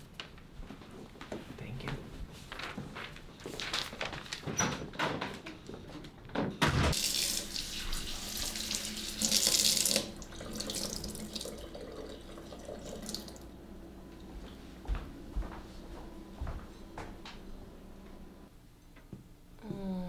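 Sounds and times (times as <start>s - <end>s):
thump: 6.6s - 7.0s
tap water running into sink: 6.9s - 13.6s.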